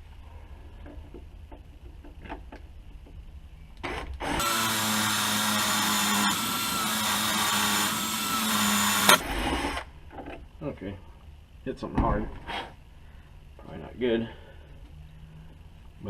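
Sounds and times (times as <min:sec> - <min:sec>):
drill bit sharp click: 0:04.2 - 0:09.2
electric drill boring into metal: 0:04.2 - 0:09.8.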